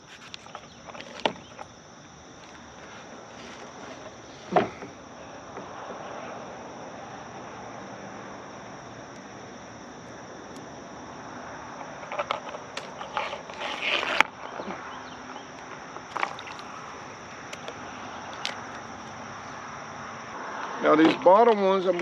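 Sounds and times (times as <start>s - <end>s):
insects chorus: 0.0s - 22.0s
gear knocking and scraping: 11.9s - 14.7s.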